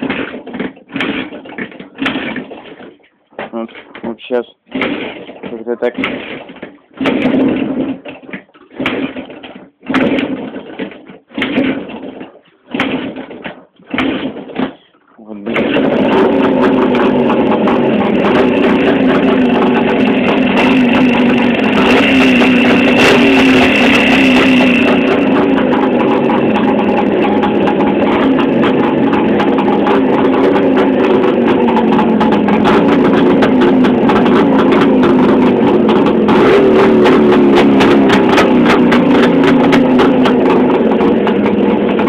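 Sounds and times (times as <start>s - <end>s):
motorcycle engine running: 0.0s - 3.0s, 3.6s - 14.8s, 15.5s - 42.0s.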